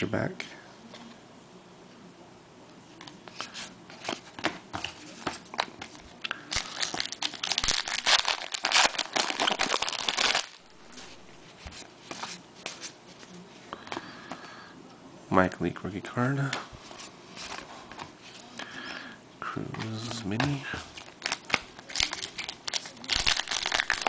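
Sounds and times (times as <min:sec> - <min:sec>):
foil wrapper crinkling: 0:05.6 - 0:11.2, 0:20.9 - 0:24.0.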